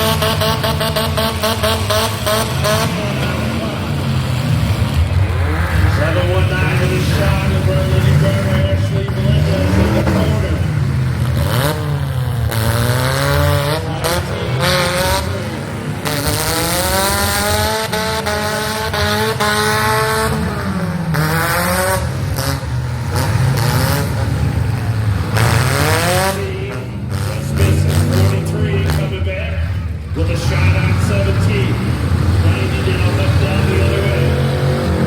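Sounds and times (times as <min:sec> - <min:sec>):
car engines revving: 0:00.0 - 0:35.0.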